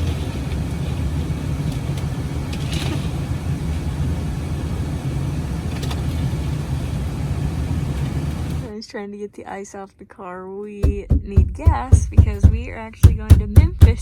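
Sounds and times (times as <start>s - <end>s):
car engine idling: 0.0s - 8.7s.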